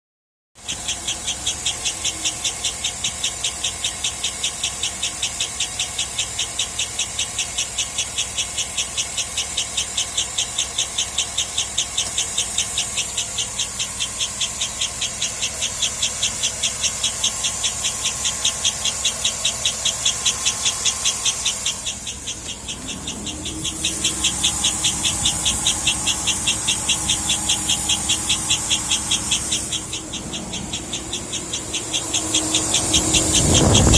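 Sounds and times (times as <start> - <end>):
engine running: 0.6 - 33.9
high-pitched rhythmic chirp: 0.6 - 33.9
steady low hum: 18.7 - 33.9.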